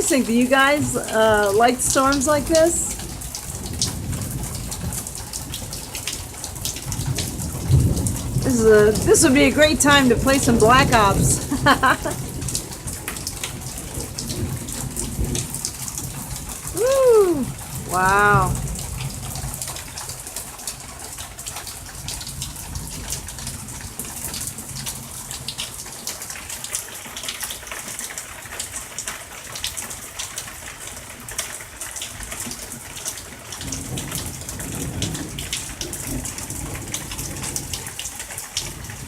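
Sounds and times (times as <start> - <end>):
heavy rain hissing: 0.0 - 4.7, 7.8 - 20.4
rain drops and drips: 0.0 - 39.0.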